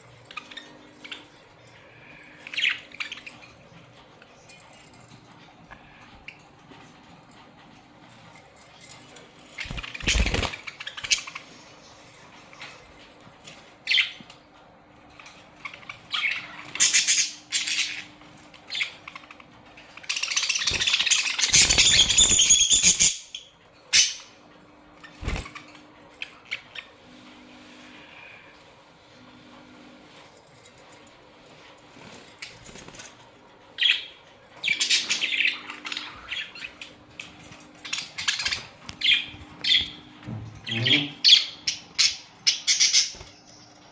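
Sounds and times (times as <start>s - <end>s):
wings flapping: 9.6s - 11.3s, 25.0s - 25.7s
budgerigars chirping: 15.6s - 24.4s, 33.8s - 43.4s.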